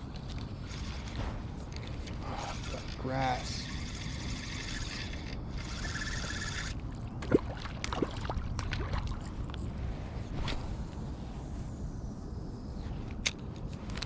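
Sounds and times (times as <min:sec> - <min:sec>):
wind rumble on microphone: 0:00.0 - 0:14.0
fishing reel winding: 0:02.3 - 0:06.8.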